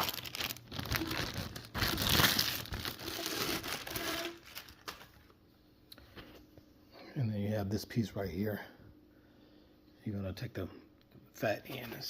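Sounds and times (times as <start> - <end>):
packaging crinkling and rustling: 0.0 - 5.4.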